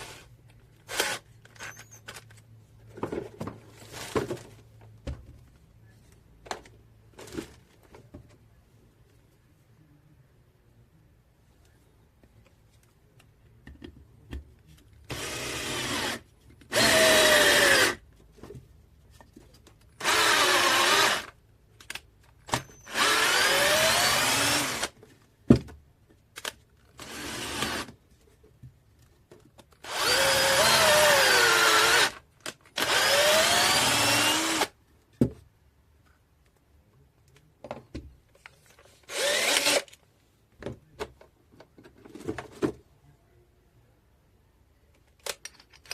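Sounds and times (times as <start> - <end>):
cordless drill motor whine: 22.8 - 24.9, 29.8 - 32.2, 32.8 - 34.7, 39.1 - 39.8
small clicks and knocks: 45.0 - 45.9.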